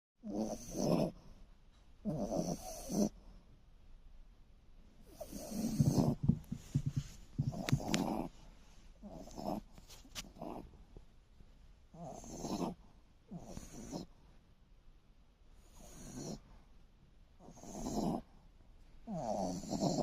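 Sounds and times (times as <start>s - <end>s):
dog snoring: 0.2s - 1.4s, 2.0s - 3.3s, 5.0s - 8.4s, 9.0s - 10.8s, 11.9s - 14.2s, 15.6s - 16.5s, 17.4s - 18.4s, 19.1s - 20.0s.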